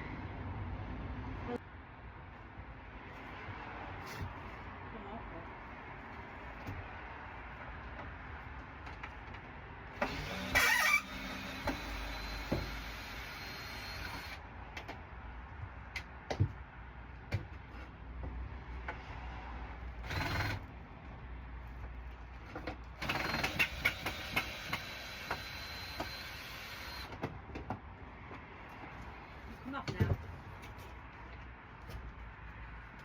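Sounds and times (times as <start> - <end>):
cordless drill running: 10.0 - 14.4, 20.0 - 20.6, 23.0 - 27.1.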